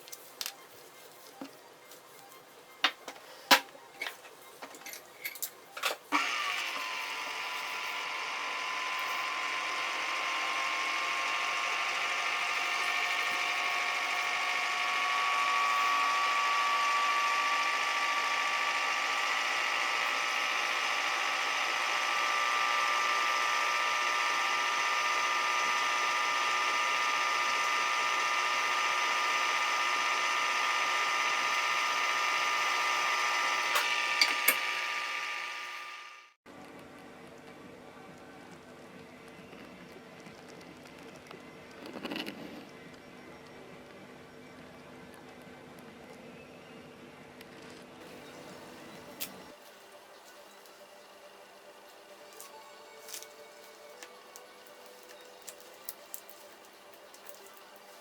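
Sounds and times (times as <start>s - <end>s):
small electric motor whining: 6.1s - 36.4s, 48.0s - 58.0s.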